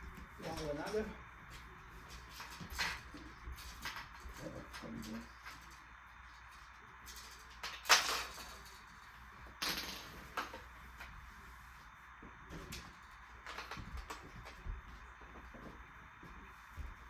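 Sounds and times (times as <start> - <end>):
marbles clattering on plastic: 7.0 - 10.6.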